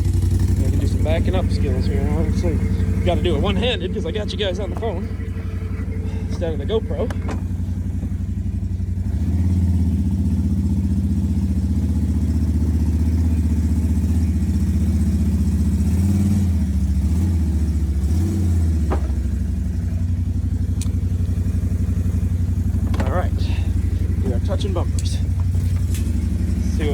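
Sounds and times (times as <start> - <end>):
vehicle engine reversing: 0.0 - 26.9.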